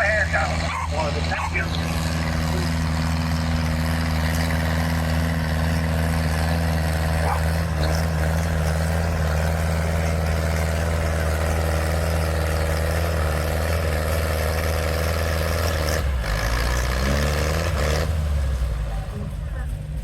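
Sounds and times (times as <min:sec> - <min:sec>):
tractor engine running: 0:00.0 - 0:20.0.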